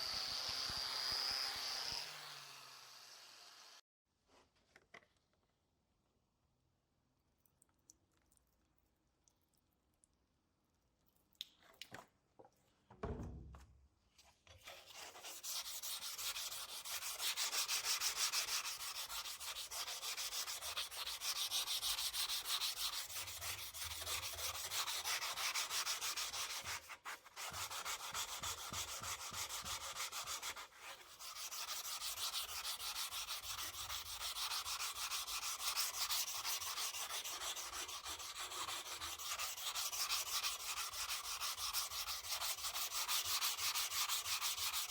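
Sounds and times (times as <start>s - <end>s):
sanding abrasive rubbing: 15.2s - 26.7s, 27.5s - 44.9s.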